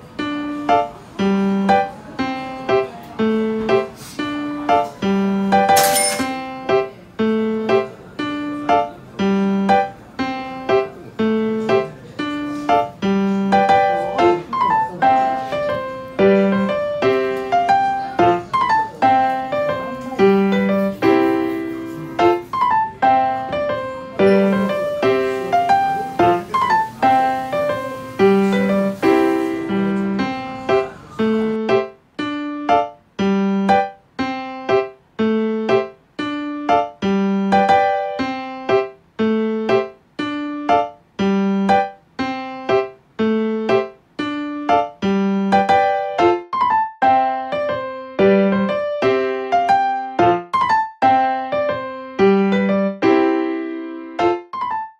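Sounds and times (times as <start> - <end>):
piano tune: 0.0 - 54.9.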